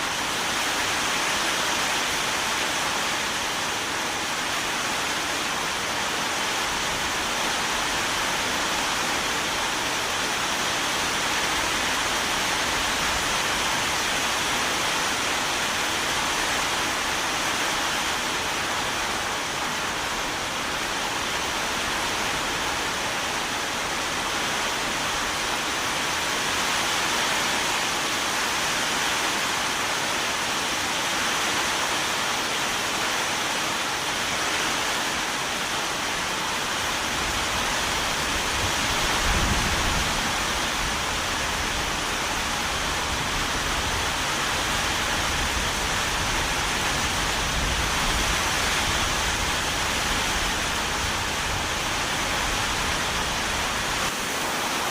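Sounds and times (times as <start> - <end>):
steady rain falling: 0.0 - 54.9.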